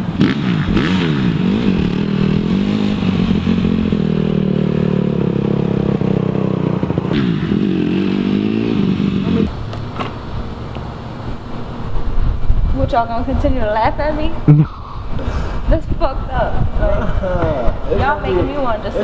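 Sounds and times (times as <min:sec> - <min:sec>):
dirt bike engine revving: 0:00.0 - 0:09.6.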